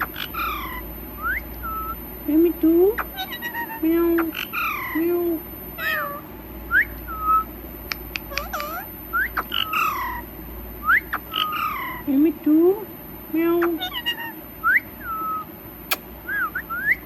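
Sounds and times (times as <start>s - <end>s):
parrot whistling and chirping: 0.0s - 2.0s, 3.0s - 5.0s, 5.8s - 7.5s, 8.2s - 12.1s, 13.6s - 15.5s, 16.2s - 17.0s
sharp clicks: 7.8s - 8.8s, 15.9s - 16.1s.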